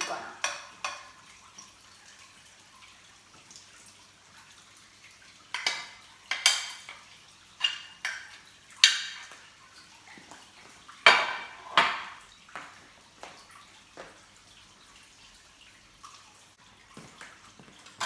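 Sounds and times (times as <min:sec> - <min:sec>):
utensil clinking on cookware: 0:00.0 - 0:01.3, 0:05.5 - 0:09.4, 0:11.0 - 0:12.2.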